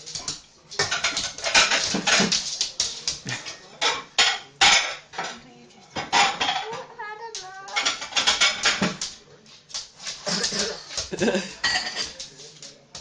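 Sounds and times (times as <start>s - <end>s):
dishes and cutlery clattering: 0.0s - 7.0s, 7.7s - 9.2s, 9.8s - 13.0s.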